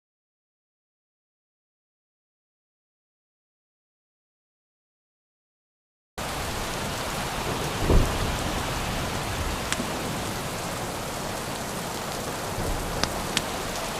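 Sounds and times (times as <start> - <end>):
heavy rainfall: 6.2 - 13.9
low rumble of thunder: 6.4 - 13.9
sharp drip ticks: 13.0 - 13.5.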